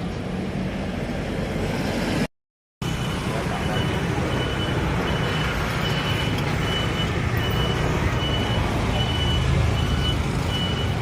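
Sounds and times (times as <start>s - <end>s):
street traffic rumbling: 0.0s - 11.0s
high electronic beeps: 2.8s - 11.0s.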